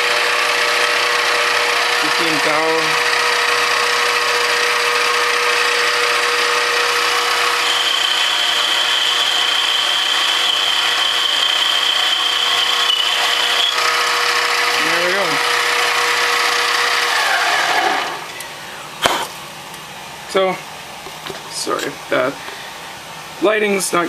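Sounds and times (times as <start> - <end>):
mini lathe running: 0.0 - 18.4
high steady whine: 0.0 - 19.4.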